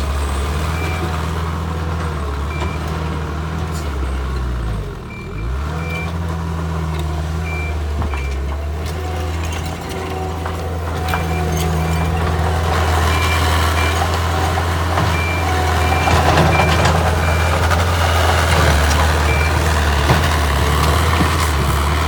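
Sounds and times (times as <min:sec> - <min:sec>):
diesel engine running: 0:00.0 - 0:22.0
reversing alarm beeps: 0:00.7 - 0:01.1, 0:05.1 - 0:06.2, 0:07.4 - 0:08.4, 0:11.1 - 0:20.8.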